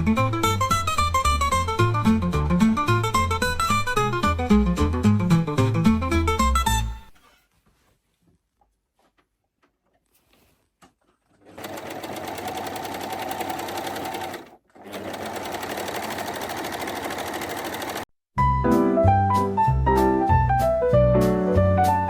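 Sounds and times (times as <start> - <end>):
music: 0.0 - 7.2, 18.4 - 22.0
sewing machine stitching: 11.3 - 18.1.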